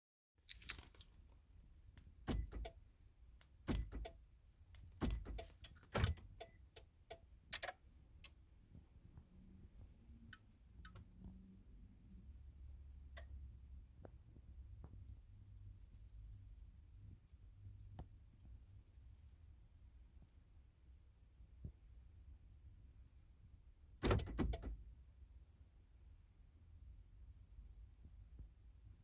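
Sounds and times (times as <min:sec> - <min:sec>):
ignition key clicks: 0:02.0 - 0:02.8, 0:03.4 - 0:04.2, 0:04.8 - 0:08.4, 0:24.0 - 0:24.8.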